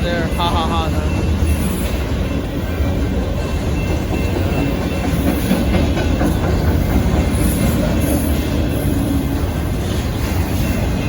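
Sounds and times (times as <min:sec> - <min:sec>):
train wheels rumbling on rails: 0:00.0 - 0:11.0.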